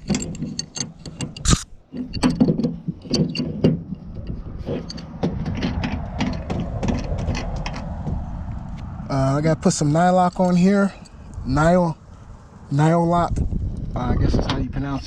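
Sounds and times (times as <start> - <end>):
metallic clicks and scrapes: 0.0 - 8.9.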